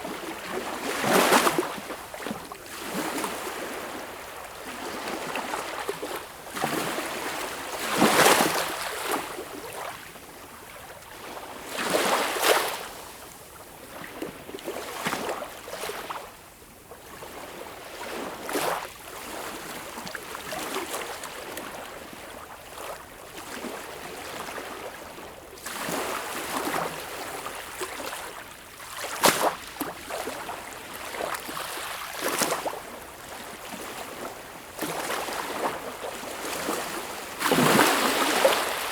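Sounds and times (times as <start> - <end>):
sea waves breaking on shore: 33.6 - 38.9.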